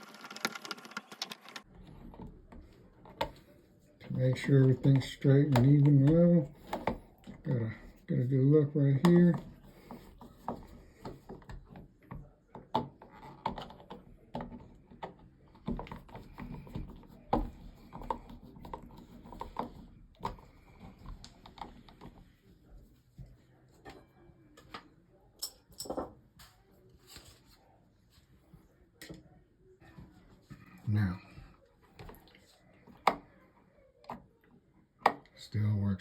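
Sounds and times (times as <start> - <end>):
plastic parts clicking and knocking: 9.0 - 22.2.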